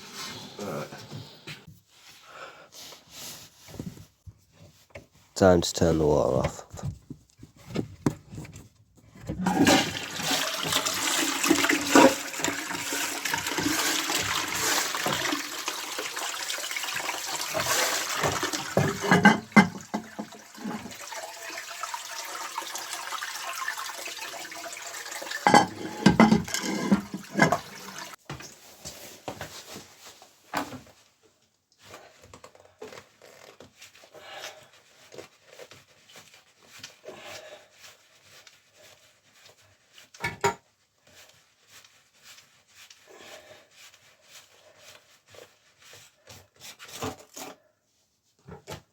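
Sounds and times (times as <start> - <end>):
toilet flushing: 9.4 - 28.2.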